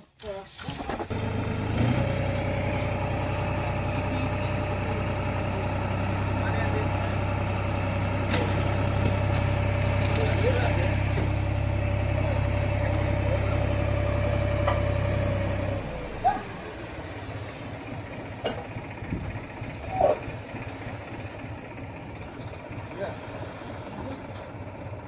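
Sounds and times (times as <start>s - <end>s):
engine idling: 0.9s - 25.0s.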